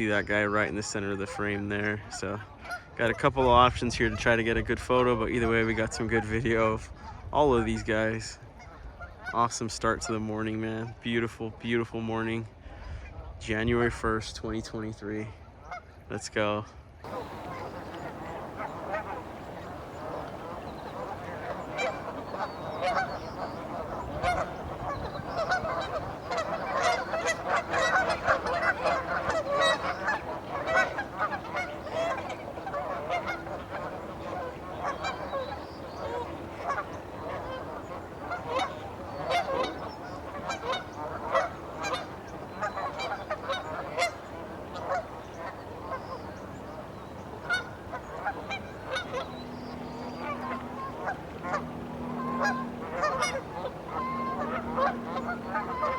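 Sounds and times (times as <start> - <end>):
geese honking: 17.1 - 55.9.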